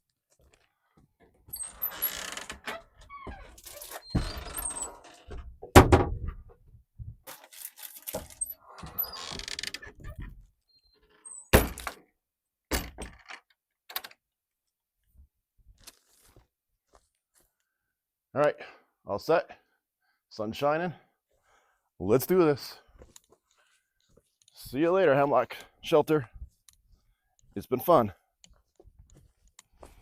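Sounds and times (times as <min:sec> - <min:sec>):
rustling and handling noise: 0:15.7 - 0:17.6.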